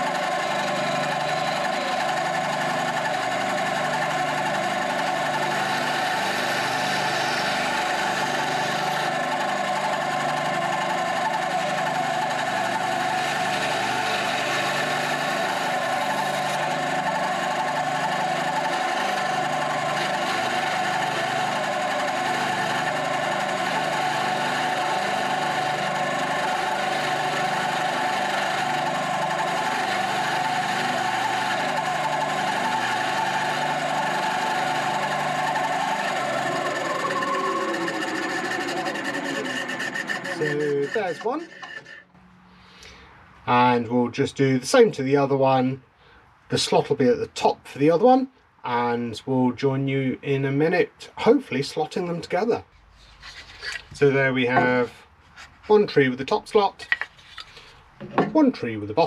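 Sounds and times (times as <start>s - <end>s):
bandsaw cutting wood: 0.0s - 42.2s, 53.2s - 58.4s.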